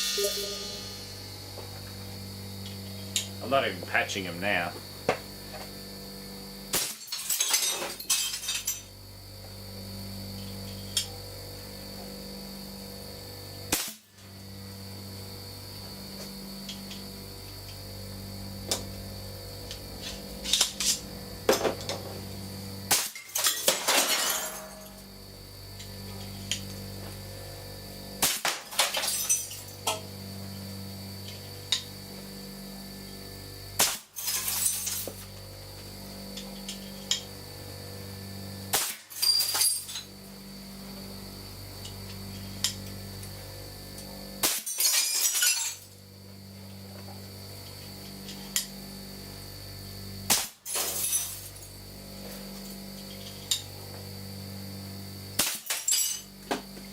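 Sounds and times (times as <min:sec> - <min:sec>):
electrical hum: 0:00.0 - 0:44.4, 0:45.0 - 0:56.9
glass shattering: 0:06.8 - 0:08.8, 0:22.9 - 0:24.9, 0:28.7 - 0:29.7, 0:34.2 - 0:35.1, 0:38.7 - 0:40.0, 0:44.4 - 0:45.9, 0:50.7 - 0:51.6, 0:55.4 - 0:56.2.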